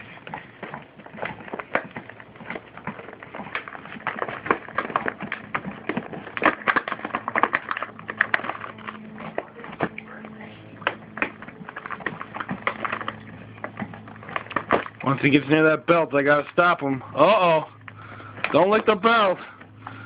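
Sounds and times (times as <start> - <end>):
dog chewing: 0.0 - 15.5
packaging crackling and tearing: 1.1 - 10.0, 10.8 - 15.4.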